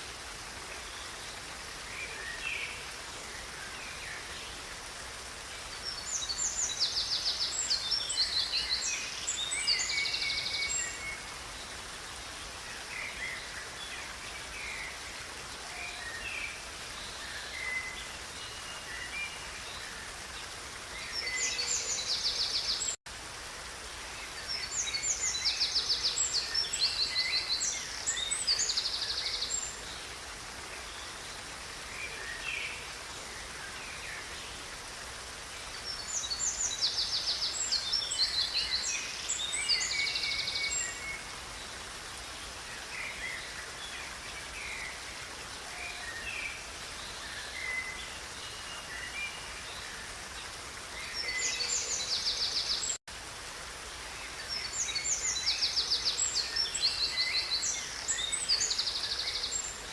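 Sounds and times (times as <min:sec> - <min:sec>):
songbirds singing: 0:00.0 - 0:23.0, 0:24.0 - 0:53.0, 0:54.1 - 0:59.9.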